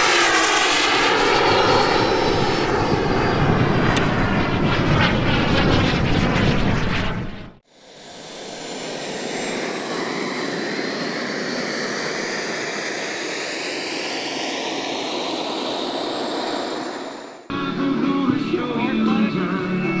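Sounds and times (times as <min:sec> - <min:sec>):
model aircraft engine whining: 0:00.0 - 0:17.7
music: 0:17.5 - 0:20.0.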